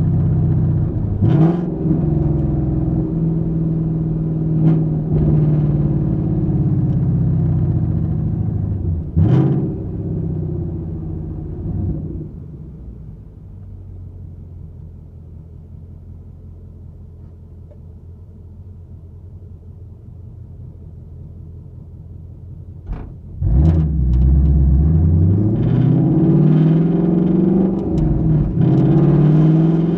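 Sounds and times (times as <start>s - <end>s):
car engine accelerating: 0.0s - 14.0s, 22.9s - 29.9s
car engine idling: 12.3s - 23.4s.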